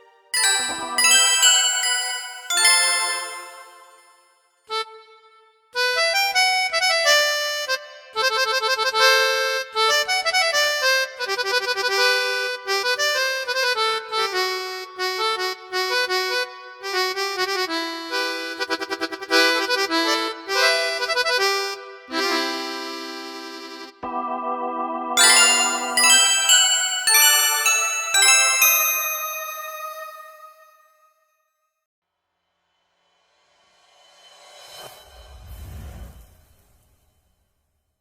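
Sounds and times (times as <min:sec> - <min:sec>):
keyboard melody: 0:00.4 - 0:04.1, 0:22.1 - 0:30.8.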